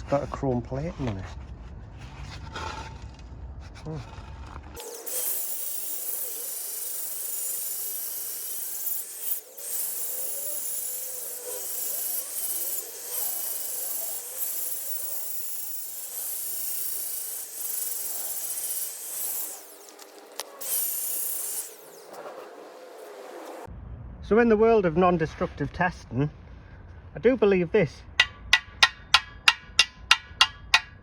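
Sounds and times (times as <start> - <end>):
loud high-pitched hissing: 4.8 - 22.2.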